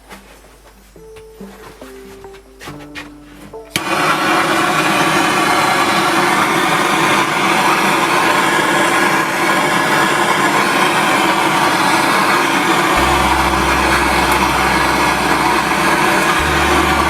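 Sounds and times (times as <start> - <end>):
furnace running: 3.4 - 17.0
low hum: 12.8 - 17.0.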